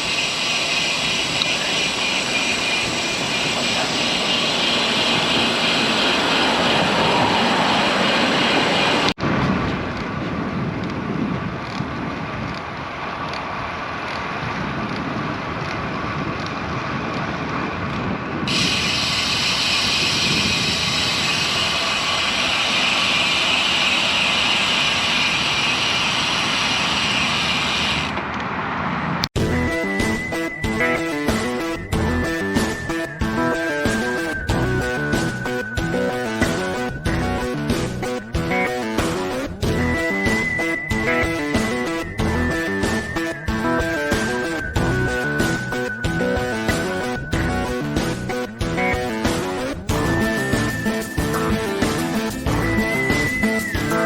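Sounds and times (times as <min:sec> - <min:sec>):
bicycle road noise: 0:00.0 - 0:54.0
motor traffic: 0:00.0 - 0:54.0
wind rushing: 0:00.0 - 0:54.0.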